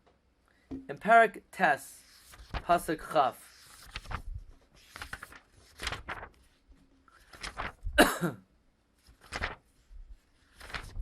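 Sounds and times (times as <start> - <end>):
man clearing his throat: 8.0 - 8.5.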